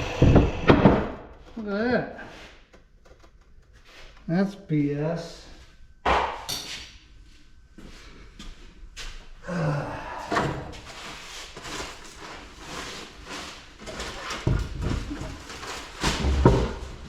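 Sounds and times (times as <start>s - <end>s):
steel shell knocking and scraping: 6.4s - 6.8s
heavy thuds: 14.5s - 17.0s.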